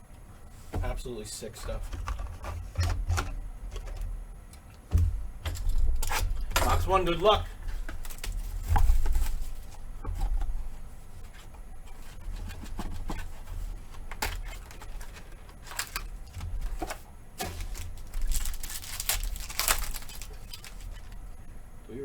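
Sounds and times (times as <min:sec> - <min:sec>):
taps and knocks: 0:04.8 - 0:06.8
wrapper and cardboard crackling: 0:05.6 - 0:09.8, 0:11.9 - 0:21.4.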